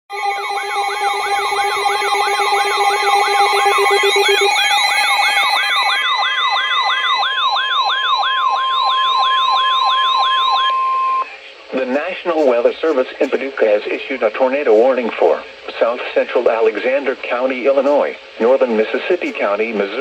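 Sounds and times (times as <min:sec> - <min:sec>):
falling siren-like alarm tone: 0:00.1 - 0:11.3
steady alarm tones: 0:00.1 - 0:20.0.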